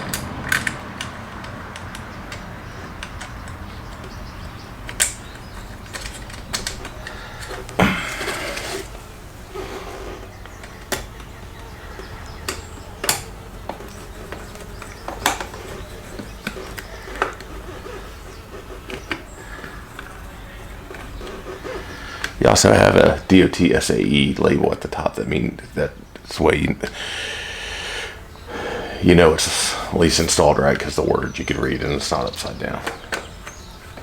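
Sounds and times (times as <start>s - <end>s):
scraping rustle: 0.0s - 24.3s.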